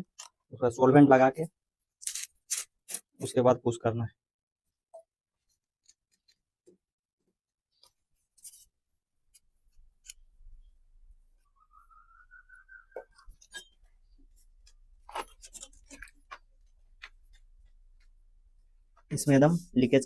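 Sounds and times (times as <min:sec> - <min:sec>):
plastic pipe scraping and clicking: 0:12.8 - 0:18.2.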